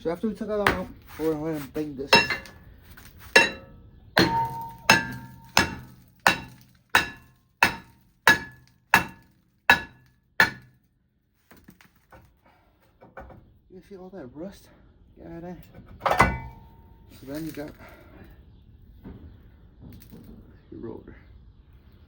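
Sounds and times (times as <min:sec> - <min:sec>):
hammer striking metal: 0:00.7 - 0:00.9, 0:02.1 - 0:02.6, 0:03.4 - 0:10.7, 0:16.1 - 0:16.8.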